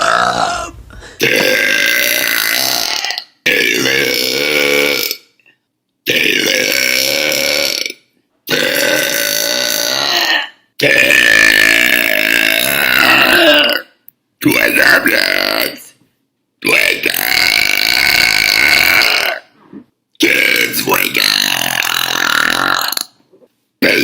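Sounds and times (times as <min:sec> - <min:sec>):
woman burping: 0:00.0 - 0:05.2.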